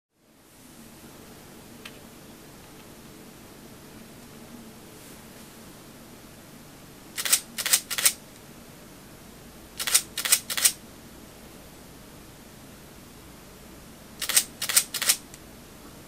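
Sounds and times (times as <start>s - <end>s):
camera shutter double clack: 7.2s - 8.2s, 9.8s - 10.8s, 14.2s - 15.2s.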